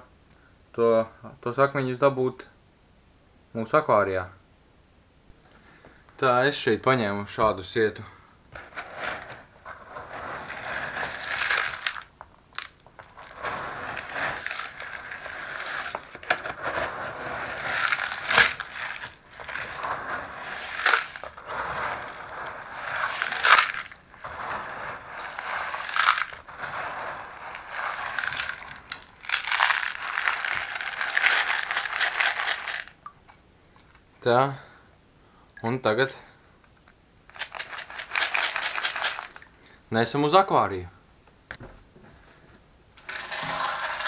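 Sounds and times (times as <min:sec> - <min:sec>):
wet gravel crunching in sieve: 0:09.2 - 0:33.0, 0:43.1 - 0:44.0.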